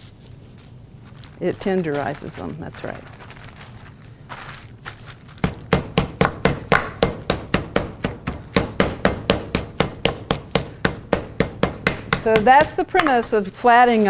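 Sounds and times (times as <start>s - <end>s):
plastic bag rustle: 0.0s - 5.7s
meat mallet thuds: 5.4s - 13.4s.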